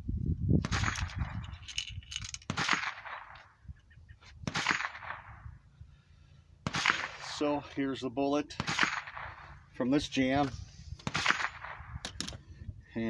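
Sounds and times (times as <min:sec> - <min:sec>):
rifle shots echoing: 0:00.6 - 0:01.5, 0:02.4 - 0:03.6, 0:04.4 - 0:05.6, 0:06.6 - 0:07.7, 0:08.4 - 0:10.4, 0:11.0 - 0:12.2
metallic clicks: 0:00.8 - 0:02.5.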